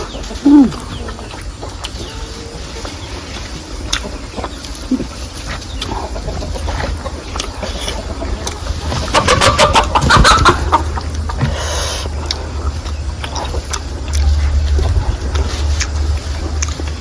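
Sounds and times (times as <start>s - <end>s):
chickens clucking: 0.0s - 17.0s
low rumble: 9.9s - 17.0s.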